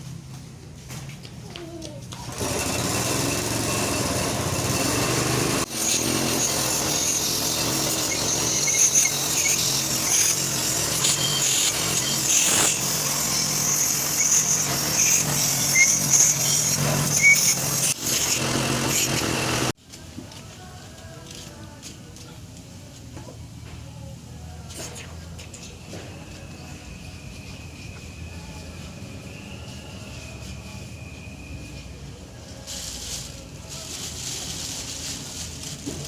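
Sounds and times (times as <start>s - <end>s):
small motor running: 2.2s - 19.7s.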